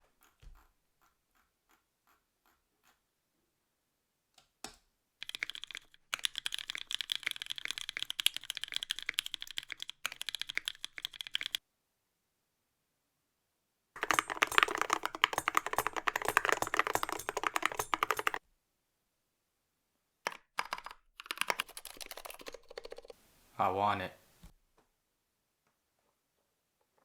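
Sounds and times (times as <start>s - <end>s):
typing on mechanical keyboard: 5.2s - 11.6s, 14.0s - 18.4s, 20.3s - 23.2s.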